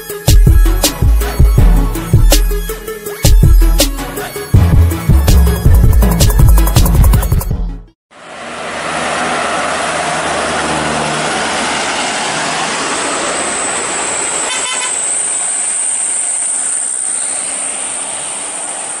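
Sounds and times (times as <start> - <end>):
bus engine running: 8.1 - 19.0.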